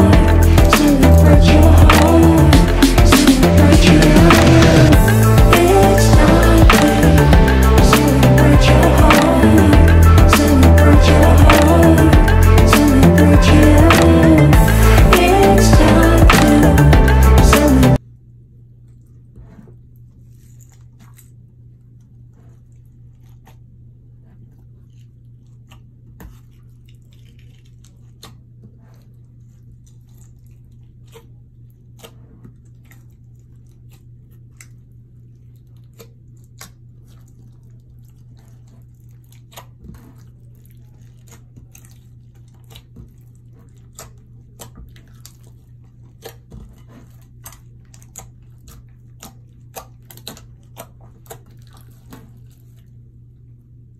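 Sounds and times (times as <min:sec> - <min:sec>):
steady low hum: 0:00.0 - 0:20.4.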